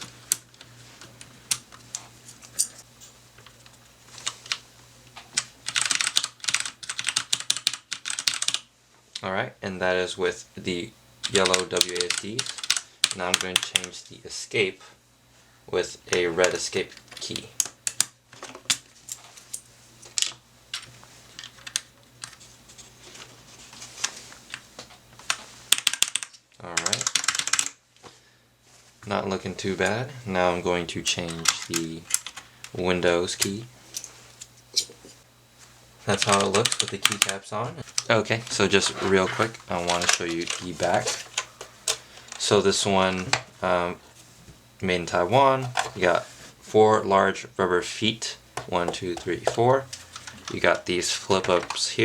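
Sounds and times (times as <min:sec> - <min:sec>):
mechanical keyboard typing: 0:05.4 - 0:08.6, 0:11.2 - 0:13.9, 0:25.3 - 0:27.8, 0:36.1 - 0:37.3, 0:39.8 - 0:41.5.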